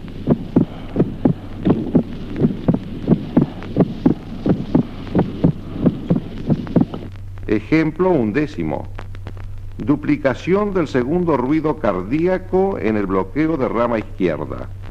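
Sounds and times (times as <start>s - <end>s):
heartbeat: 0.0s - 7.3s
low hum: 0.0s - 14.9s.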